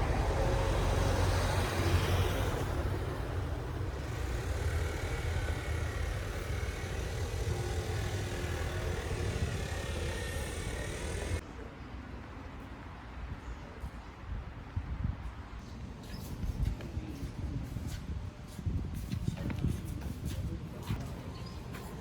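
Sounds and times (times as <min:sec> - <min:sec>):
low rumble of passing traffic: 0:00.0 - 0:15.6.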